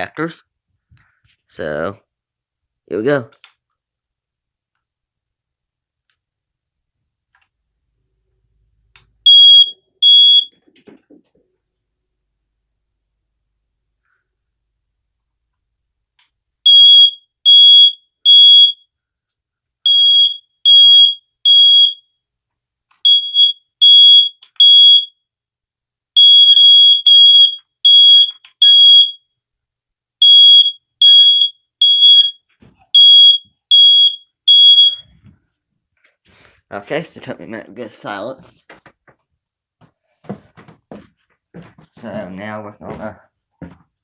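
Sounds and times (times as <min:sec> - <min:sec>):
smoke alarm beeping: 0:09.2 - 0:10.6, 0:16.6 - 0:18.9, 0:19.8 - 0:22.2, 0:23.0 - 0:25.2, 0:26.2 - 0:29.3, 0:30.2 - 0:35.2.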